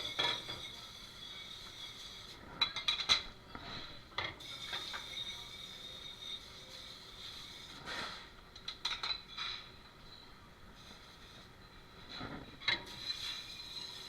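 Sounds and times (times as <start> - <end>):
dishes and utensils clattering: 0.0 - 0.9, 2.6 - 6.4.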